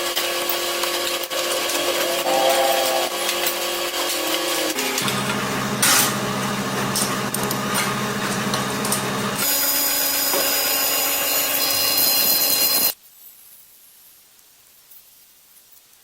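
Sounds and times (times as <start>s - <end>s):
high machine whine: 0.3s - 13.0s
machine humming: 0.8s - 12.9s.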